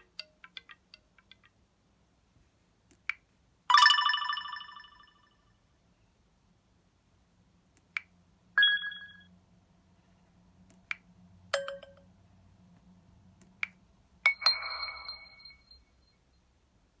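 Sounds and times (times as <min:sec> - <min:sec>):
phone alert tones: 0:03.7 - 0:05.1, 0:08.6 - 0:09.3, 0:14.3 - 0:15.8.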